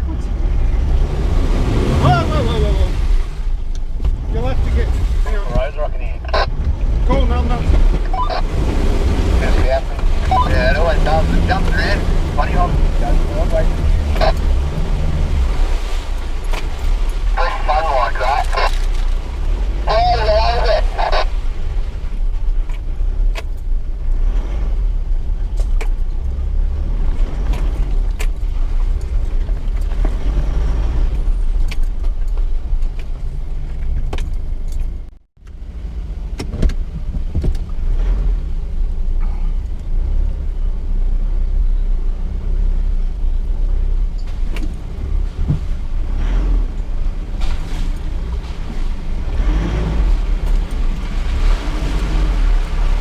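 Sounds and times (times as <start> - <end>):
vehicle engine rumbling: 0.0 - 53.0
knocks and clunks: 3.7 - 15.5, 36.3 - 37.8, 44.2 - 45.9.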